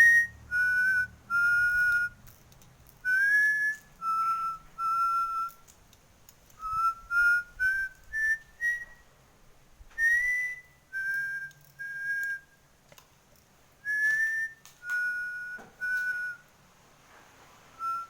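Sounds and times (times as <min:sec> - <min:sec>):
high whistled notes: 0:00.0 - 0:02.3, 0:03.0 - 0:05.6, 0:06.6 - 0:09.0, 0:10.0 - 0:12.6, 0:13.8 - 0:16.5, 0:17.8 - 0:18.0.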